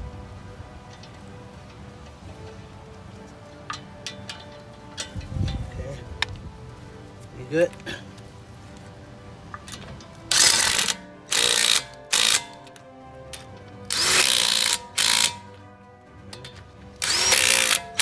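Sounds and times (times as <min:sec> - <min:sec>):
ratchet wrench clicking: 0:09.6 - 0:12.8, 0:13.9 - 0:15.6, 0:16.4 - 0:18.0.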